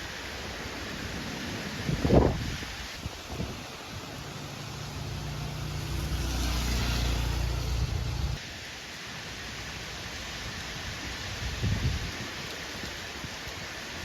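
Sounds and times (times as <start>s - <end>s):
rain and wind hissing: 0.0s - 14.0s
vehicle engine running: 4.7s - 8.4s.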